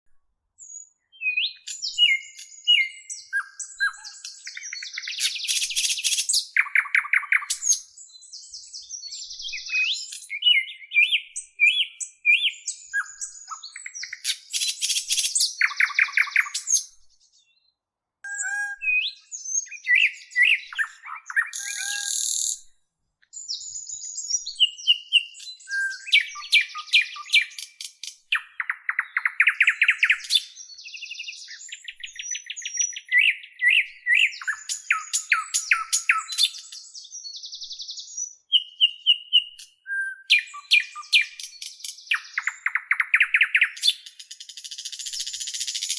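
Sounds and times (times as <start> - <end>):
songbird singing trills: 0.6 - 22.7, 23.3 - 45.9.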